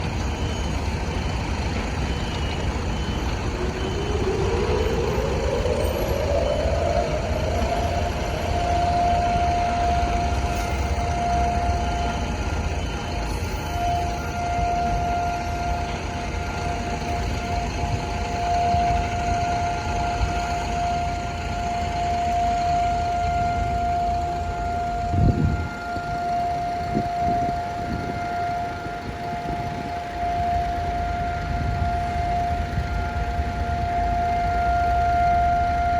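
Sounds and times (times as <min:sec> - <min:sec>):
civil defense siren: 0:00.0 - 0:35.9
low rumble: 0:02.6 - 0:13.2.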